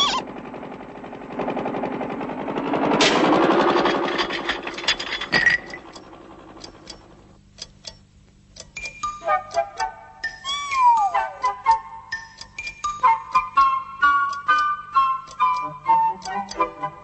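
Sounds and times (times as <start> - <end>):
clock ticking: 5.6 - 17.0
alarm clock ringing: 8.8 - 17.0
music notes: 8.8 - 17.0.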